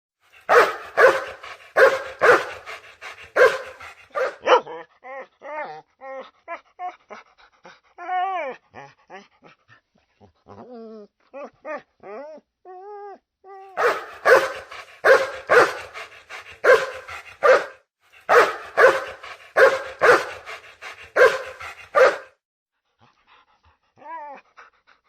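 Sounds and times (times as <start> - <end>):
dog barking loudly: 0.4 - 4.7, 13.8 - 22.4
dog whining and whimpering: 3.4 - 7.2, 8.0 - 9.3, 10.3 - 17.6, 24.0 - 24.6.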